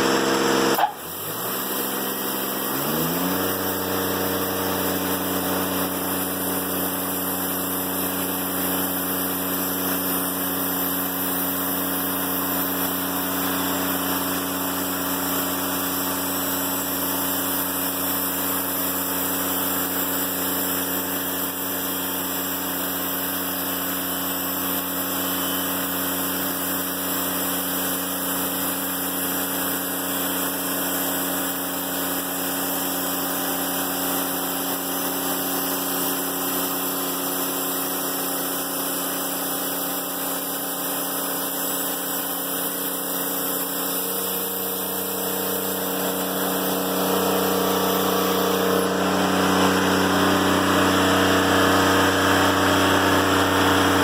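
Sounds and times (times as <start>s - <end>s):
diesel engine running: 0.0s - 9.5s, 37.9s - 54.0s
saw blade cutting log: 0.0s - 11.3s, 28.2s - 54.0s.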